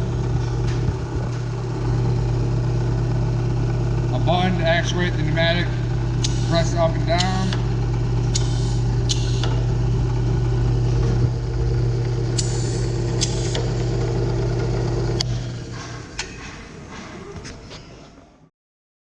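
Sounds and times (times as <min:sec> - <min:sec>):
drill press motor humming: 0:00.0 - 0:17.5
clicks: 0:06.2 - 0:06.5
air hisses: 0:06.2 - 0:06.7, 0:08.3 - 0:09.6, 0:12.4 - 0:13.7.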